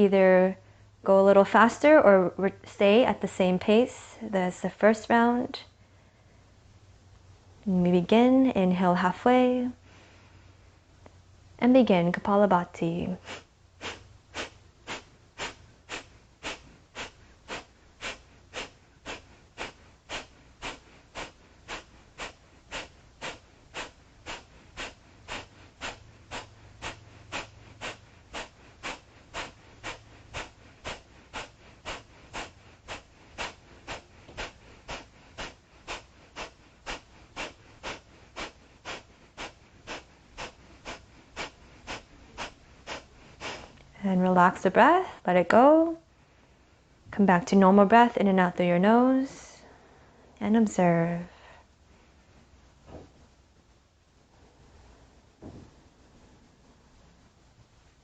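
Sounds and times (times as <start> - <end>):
forceful nasal exhalations: 13.2 - 44.0.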